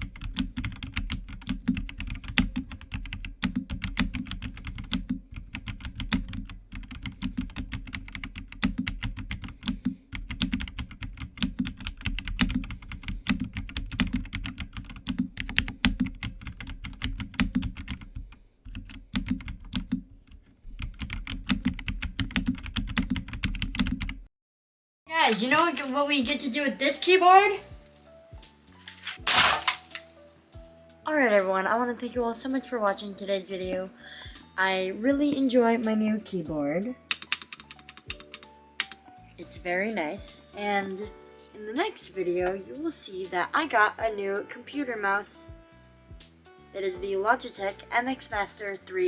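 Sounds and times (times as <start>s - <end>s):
mechanical keyboard typing: 0.0s - 20.0s, 20.8s - 24.2s, 37.1s - 38.9s.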